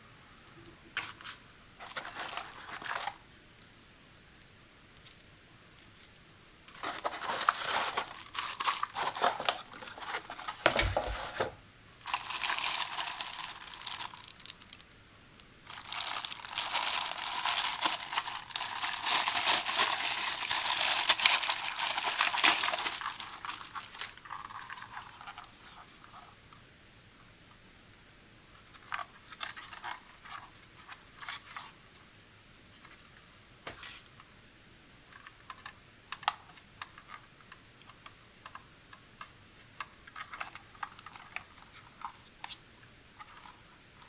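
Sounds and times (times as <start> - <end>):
packaging crinkling and rustling: 1.0 - 3.2, 6.7 - 14.9, 15.6 - 25.7, 28.8 - 31.8, 40.0 - 42.6.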